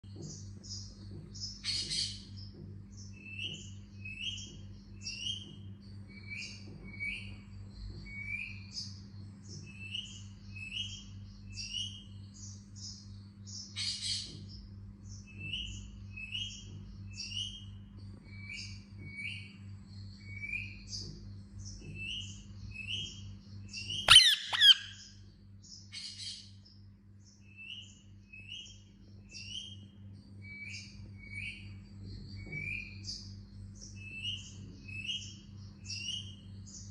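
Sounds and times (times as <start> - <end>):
steady low hum: 0.0 - 36.9
parakeet chirping: 23.8 - 25.1
parakeet squawk: 24.0 - 25.1.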